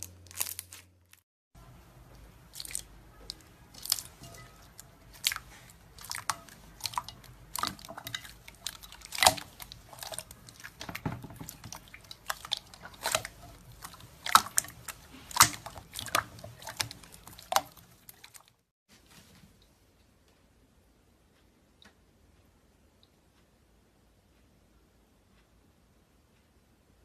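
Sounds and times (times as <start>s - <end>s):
slime popping and crackling: 0.0s - 1.2s, 2.4s - 18.5s.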